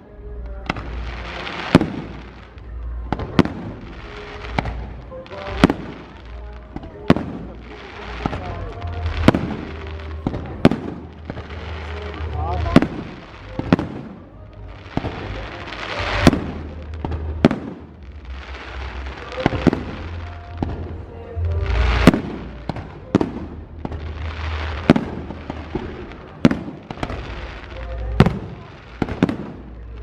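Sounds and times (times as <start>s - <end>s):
fireworks crackling hiss: 0.0s - 30.0s.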